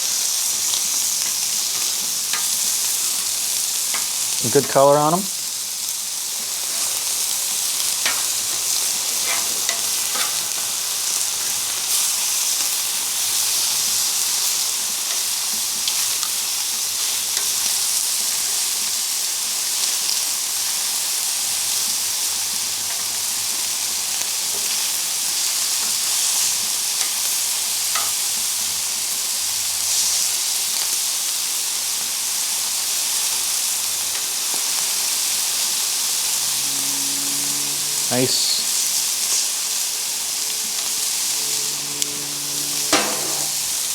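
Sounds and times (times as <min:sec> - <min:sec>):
food sizzling on a griddle: 0:00.0 - 0:43.9.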